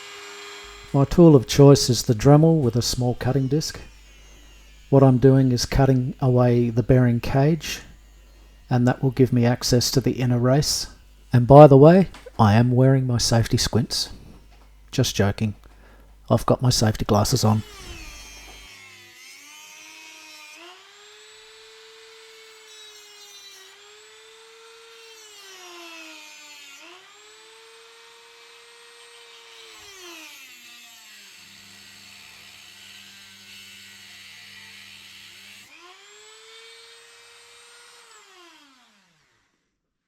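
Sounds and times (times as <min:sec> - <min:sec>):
rotary tool whining: 0:00.0 - 0:11.4, 0:17.1 - 0:24.8.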